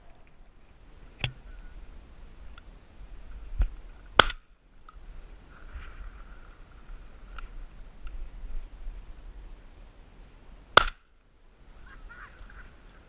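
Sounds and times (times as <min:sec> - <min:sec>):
wind rumble on microphone: 0:00.0 - 0:10.7
shotgun shot: 0:04.2 - 0:04.4, 0:10.8 - 0:11.1.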